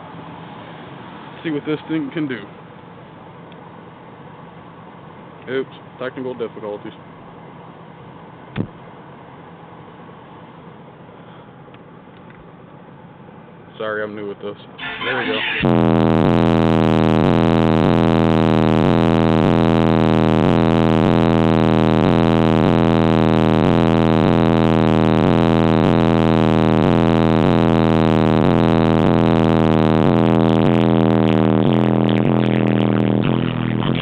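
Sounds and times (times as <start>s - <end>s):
loud bass-heavy music from subwoofers: 14.8s - 34.0s.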